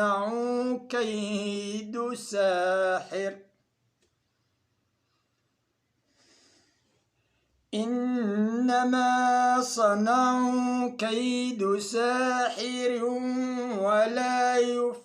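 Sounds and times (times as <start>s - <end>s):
man reciting melodically: 0.0s - 3.6s, 7.7s - 15.0s
faint breath: 6.0s - 7.6s.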